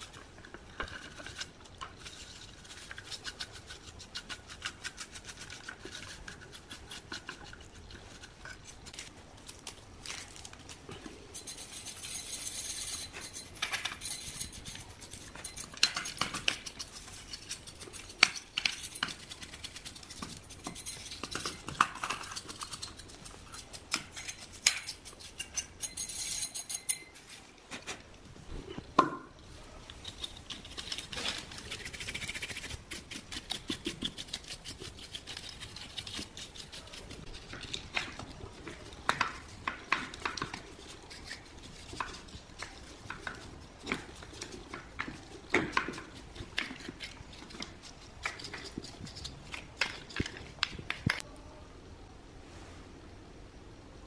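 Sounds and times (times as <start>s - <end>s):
hand tools clicking and tapping: 13.0s - 28.0s, 29.9s - 51.2s.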